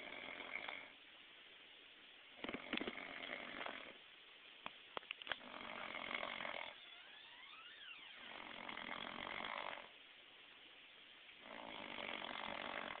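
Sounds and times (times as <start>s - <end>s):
man snoring loud: 0.0s - 0.9s, 5.4s - 6.8s, 8.2s - 9.9s, 11.4s - 13.0s
rising and falling whistle: 6.8s - 8.2s.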